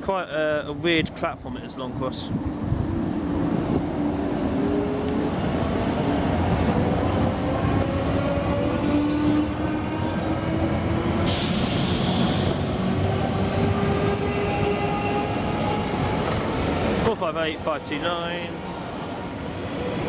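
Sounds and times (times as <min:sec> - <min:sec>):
train rumble: 0:00.0 - 0:20.0
high hiss: 0:11.2 - 0:12.7.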